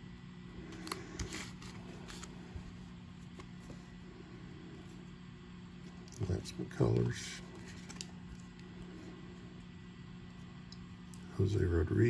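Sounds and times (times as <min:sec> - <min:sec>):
low steady hum: 0:00.0 - 0:12.0
cards rustling and flicking: 0:00.5 - 0:04.0, 0:06.8 - 0:08.8.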